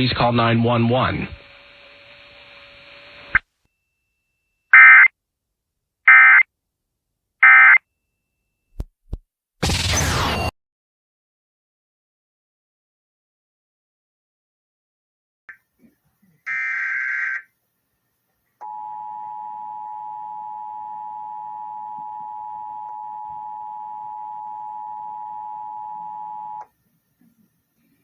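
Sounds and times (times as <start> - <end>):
screechy data tone burst: 9.6 - 10.5.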